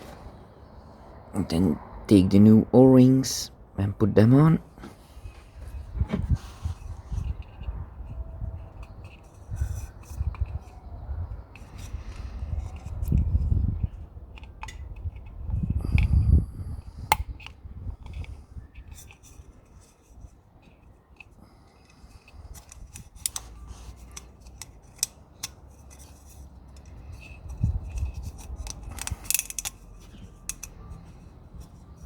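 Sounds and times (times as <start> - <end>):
soft rubbing of small parts: 4.8 - 16.1, 18.0 - 32.0
small parts clicking: 17.1 - 32.0.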